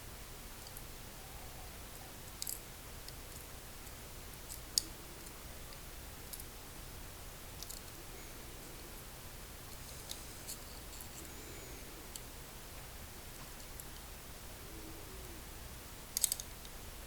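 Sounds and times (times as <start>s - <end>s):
small metal clicks and taps: 16.2s - 16.8s.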